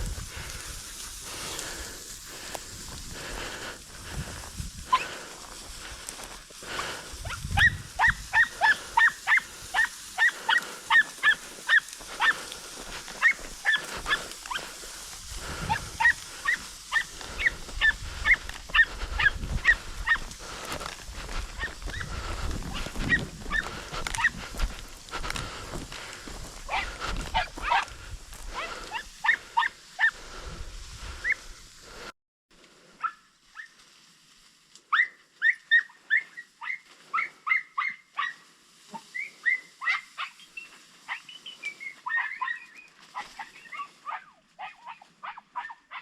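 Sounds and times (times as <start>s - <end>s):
hound yelping: 7.2s - 14.8s, 15.5s - 20.4s, 22.7s - 24.5s, 26.7s - 27.9s, 28.6s - 30.2s, 34.9s - 38.4s, 39.0s - 40.5s, 42.0s - 46.0s.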